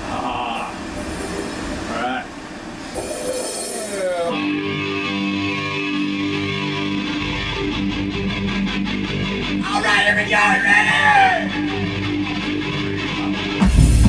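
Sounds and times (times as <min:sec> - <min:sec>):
electric guitar ringing chords: 0:03.0 - 0:14.0
bass guitar: 0:04.3 - 0:14.0.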